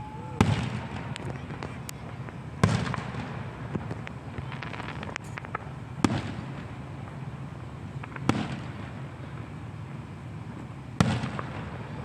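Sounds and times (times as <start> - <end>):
low background noise: 0.0 - 12.0
firework shells bursting: 0.4 - 7.2.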